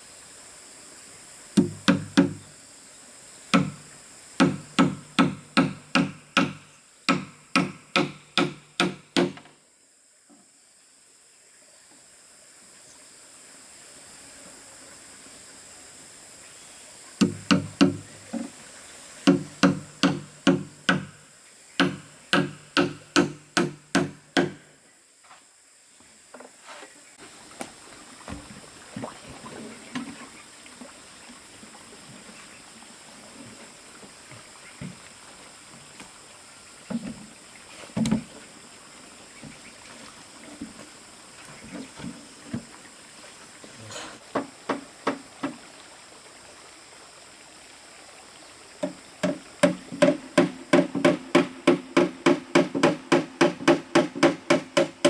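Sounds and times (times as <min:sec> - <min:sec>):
hammer driving nails: 0:01.6 - 0:02.5, 0:03.6 - 0:09.5, 0:17.2 - 0:18.1, 0:19.3 - 0:21.2, 0:21.8 - 0:24.6, 0:49.2 - 0:55.0
wood knocking: 0:01.6 - 0:02.5, 0:03.6 - 0:09.5, 0:17.2 - 0:18.6, 0:19.3 - 0:21.2, 0:21.8 - 0:24.6, 0:44.3 - 0:45.6, 0:48.8 - 0:55.0.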